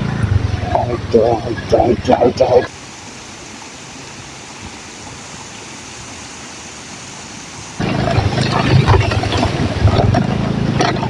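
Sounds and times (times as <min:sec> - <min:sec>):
motorcycle engine running: 0:00.0 - 0:02.7, 0:07.8 - 0:11.0
stream rushing: 0:00.0 - 0:11.0.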